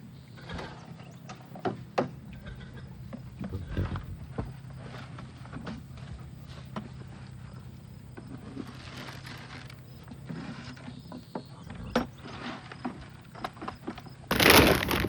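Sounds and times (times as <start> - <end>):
loud rustling crunching: 14.3 - 15.0.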